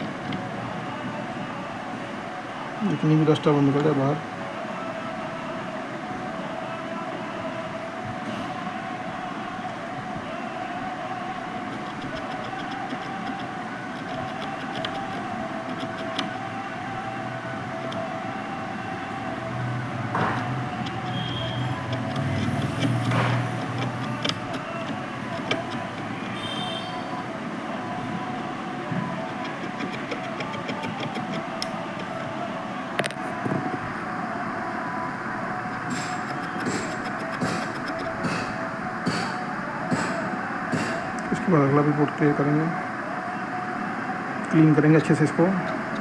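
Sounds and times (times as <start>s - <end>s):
background hum and hiss: 0.0s - 46.0s
cotton scratching on contacts: 11.6s - 16.4s, 20.1s - 26.8s, 29.2s - 32.3s.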